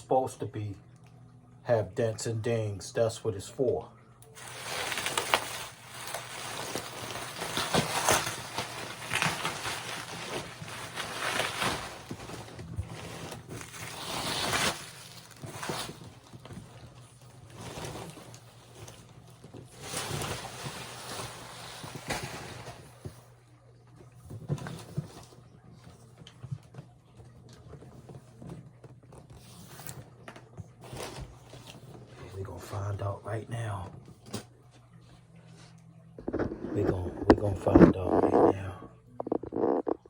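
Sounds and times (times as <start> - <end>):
packaging ripping and rustling: 4.4 - 23.1.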